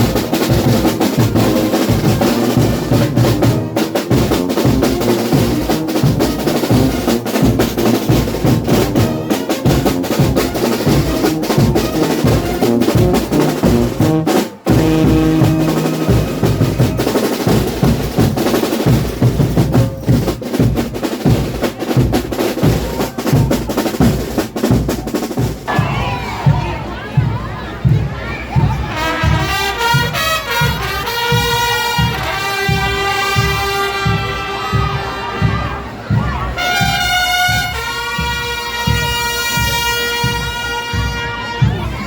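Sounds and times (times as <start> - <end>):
brass band playing fast music: 0.0 - 27.6, 28.4 - 42.0
snare drum rolls: 0.0 - 42.0.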